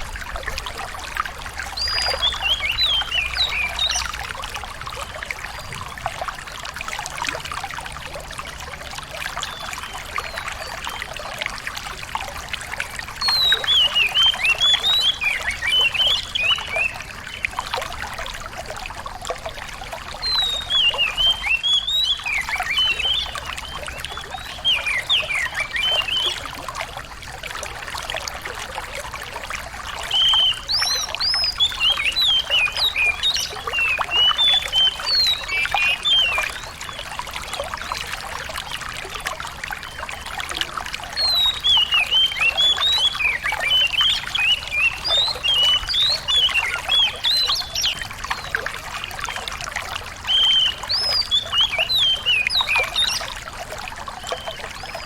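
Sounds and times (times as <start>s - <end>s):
trickling water: 0.0s - 55.0s
songbird chirping: 1.7s - 4.3s, 13.2s - 17.9s, 20.2s - 26.8s, 29.9s - 38.2s, 39.8s - 49.4s, 50.2s - 53.4s.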